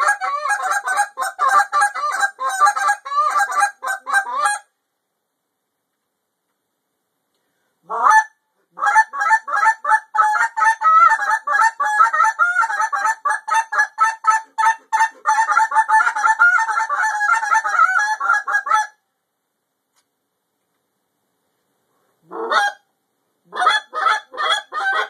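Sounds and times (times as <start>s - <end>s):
goose call honks and clucks: 0.0s - 4.7s, 7.8s - 19.0s, 22.2s - 22.9s, 23.5s - 25.0s.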